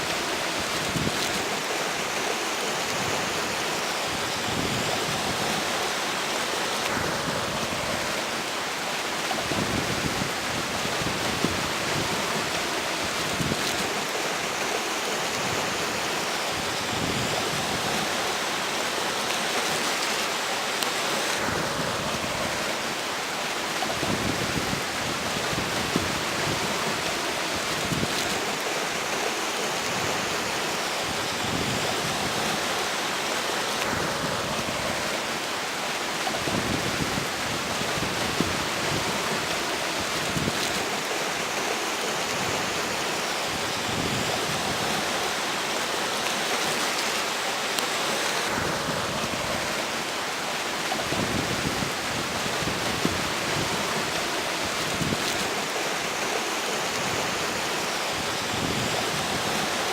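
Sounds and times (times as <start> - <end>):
river flowing: 0.0 - 59.9
wind buffeting microphone: 50.8 - 55.6.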